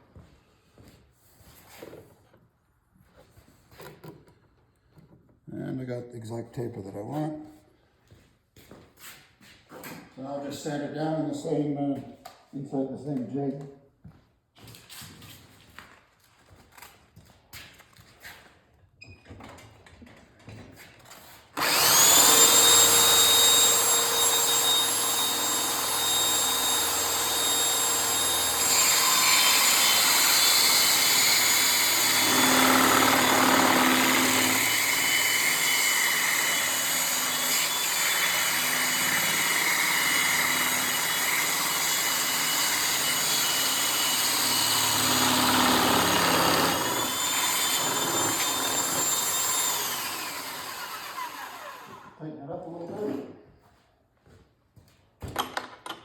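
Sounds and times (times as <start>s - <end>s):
power tool motor whine: 21.6s - 52.2s.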